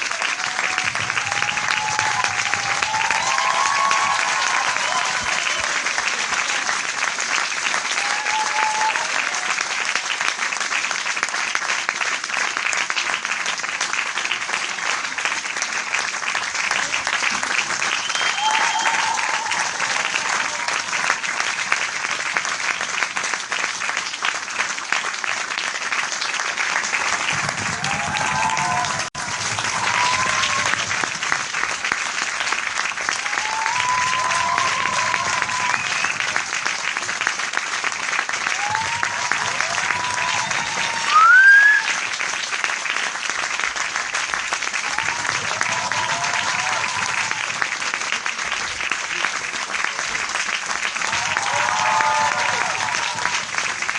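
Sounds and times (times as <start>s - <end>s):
crowd shouts and cheers: 0.0s - 6.7s, 7.8s - 9.8s, 18.0s - 21.2s, 27.3s - 31.1s, 33.0s - 36.8s, 38.4s - 42.0s, 44.8s - 47.7s, 51.0s - 53.9s
crowd clapping: 0.0s - 53.9s.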